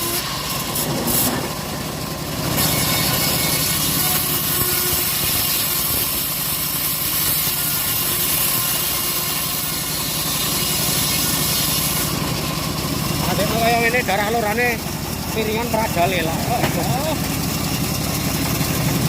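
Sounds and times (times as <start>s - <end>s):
saw blade cutting log: 0.0s - 19.0s
sawmill engine running: 0.0s - 19.0s.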